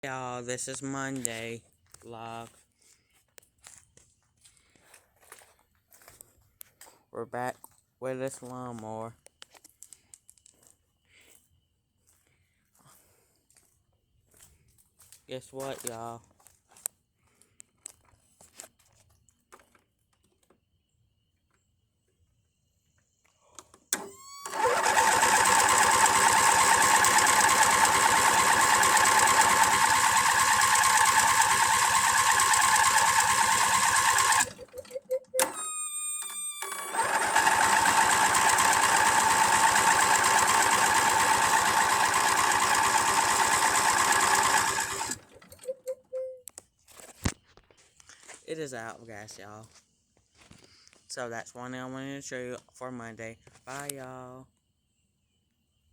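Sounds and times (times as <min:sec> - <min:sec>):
lawnmower starter cranking: 0:23.9 - 0:46.0.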